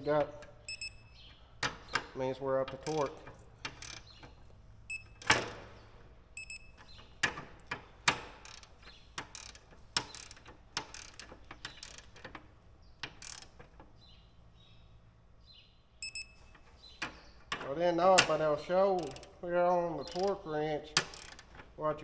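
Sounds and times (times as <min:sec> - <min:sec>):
torque wrench clicks and metal knocks: 0:00.0 - 0:15.3, 0:16.0 - 0:22.0
short high electronic beeps: 0:00.7 - 0:01.1, 0:06.4 - 0:06.7, 0:16.0 - 0:16.4.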